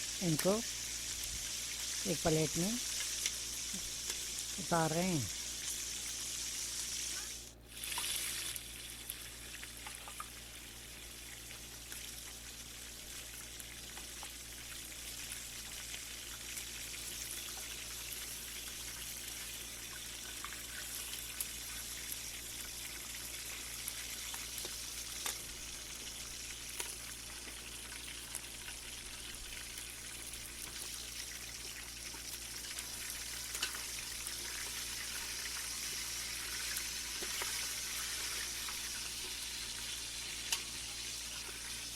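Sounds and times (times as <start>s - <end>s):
chicken sizzling in a pan: 0.0s - 41.9s
oil crackling and popping: 0.0s - 41.9s.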